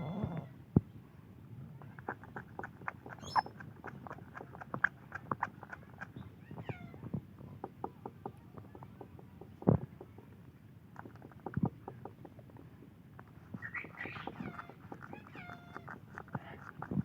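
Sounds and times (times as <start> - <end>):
parrot chirping: 3.1 - 3.6, 13.6 - 16.0.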